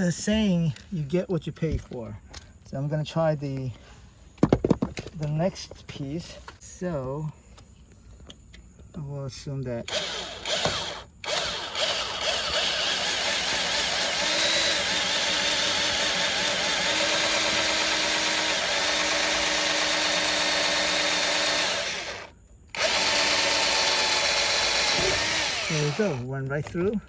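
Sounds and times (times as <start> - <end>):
electric drill boring: 9.9 - 26.2.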